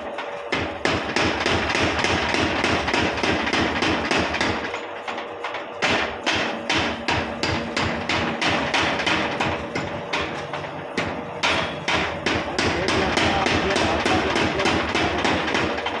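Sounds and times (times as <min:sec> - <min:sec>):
hammer striking: 0:00.2 - 0:16.0.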